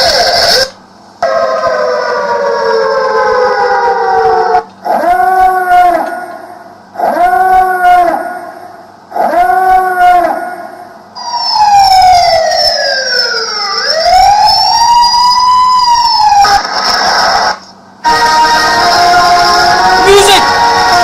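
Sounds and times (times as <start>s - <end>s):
harsh noise: 0.0s - 1.7s, 16.1s - 21.0s
many-toned alarm sound: 0.0s - 5.6s, 11.2s - 16.6s
recorded siren wailing: 0.0s - 16.9s, 18.0s - 21.0s.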